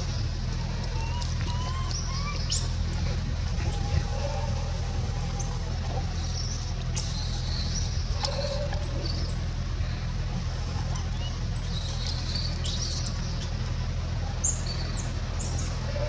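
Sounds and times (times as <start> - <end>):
steady low rumble: 0.0 - 16.0
animal squeaks and chirps: 0.8 - 4.2, 5.3 - 9.5, 11.0 - 13.5, 14.4 - 16.0.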